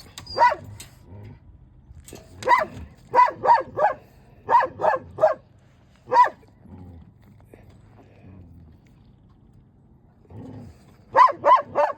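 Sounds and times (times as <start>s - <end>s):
dog barking: 0.4s - 0.7s, 2.4s - 5.4s, 6.1s - 6.4s, 11.1s - 11.9s.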